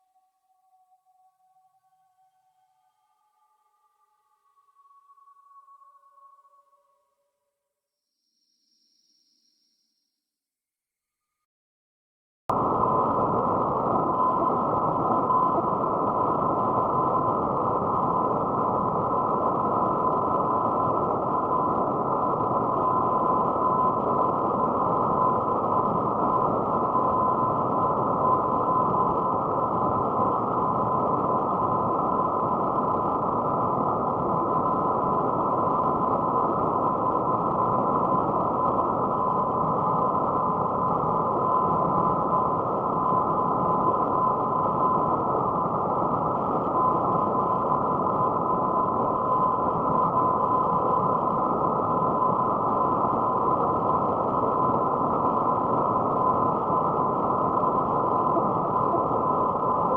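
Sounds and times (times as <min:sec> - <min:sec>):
thin steady whine: 0:00.0 - 0:07.3, 0:08.0 - 0:10.2, 0:12.5 - 0:59.9.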